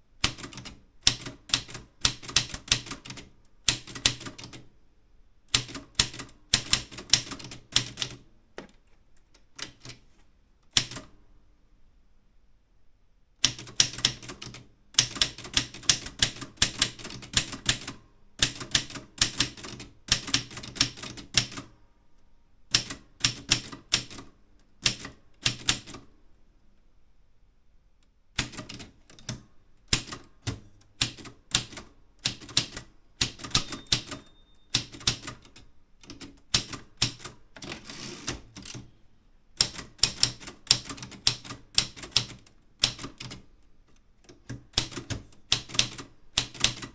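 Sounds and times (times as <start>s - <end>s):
typewriter typing: 0.2s - 4.6s, 13.4s - 21.7s, 30.0s - 38.8s, 39.6s - 43.4s, 44.2s - 46.9s
typewriter bell ring: 33.4s - 35.2s.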